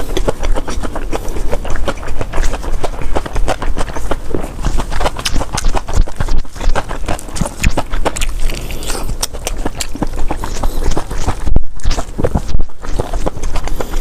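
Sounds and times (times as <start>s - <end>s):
close chewing with mouth smacks: 0.0s - 14.0s.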